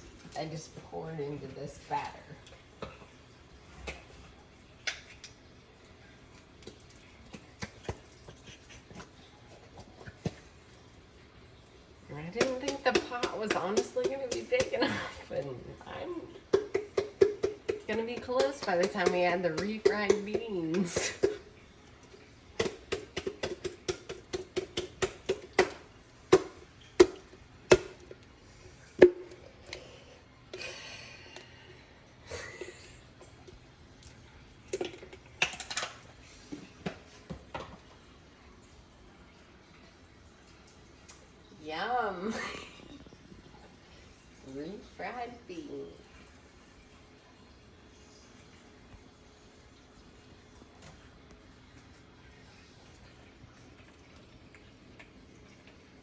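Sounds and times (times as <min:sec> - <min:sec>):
kitchen utensils clicking and knocking: 0:12.3 - 0:15.3, 0:16.4 - 0:21.5, 0:22.6 - 0:28.2, 0:34.7 - 0:36.1.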